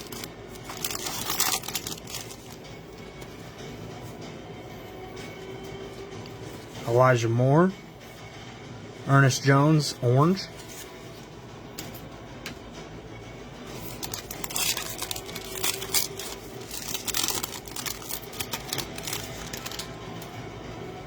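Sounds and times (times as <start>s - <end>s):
card wrapper crinkling: 0.0s - 2.7s, 13.8s - 20.0s
cards being handled: 0.0s - 2.7s, 10.5s - 12.0s, 13.7s - 20.3s
faint background music: 0.0s - 21.0s.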